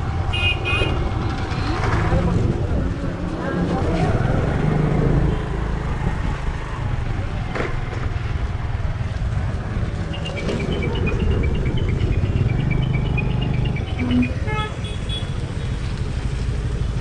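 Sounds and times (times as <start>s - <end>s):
motorcycle engine and wind rumble: 0.0s - 17.0s
road traffic: 0.0s - 17.0s
two-pitch high beeps: 10.2s - 14.6s
vehicle horn toot: 14.0s - 15.4s.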